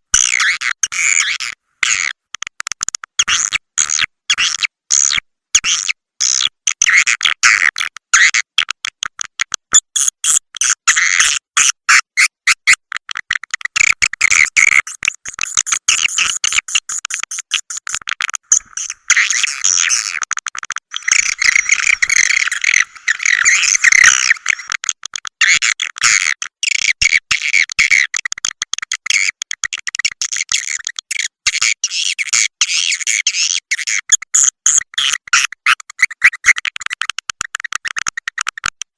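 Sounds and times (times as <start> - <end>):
high-pitched swiftlet chirps: 20.9 - 24.7.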